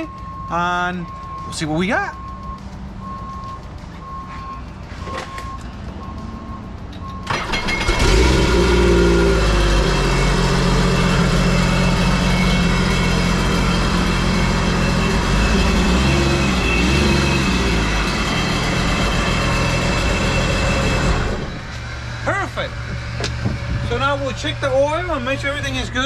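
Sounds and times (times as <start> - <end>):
watercraft engine revving and idling: 7.3 - 21.4.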